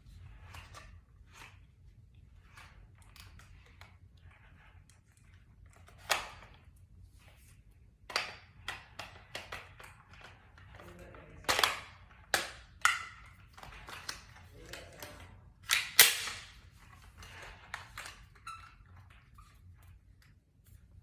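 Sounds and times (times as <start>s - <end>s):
toy gun plastic clicks and rattles: 11.4s - 16.5s.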